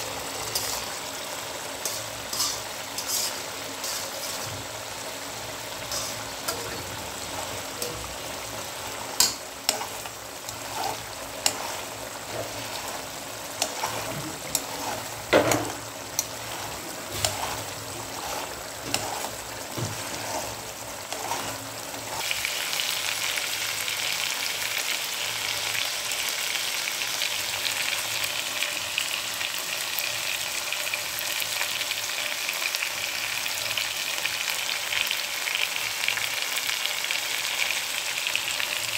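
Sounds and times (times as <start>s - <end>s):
curry sizzling in a pan: 0.0s - 38.9s
spatula scraping a pan: 0.2s - 22.5s.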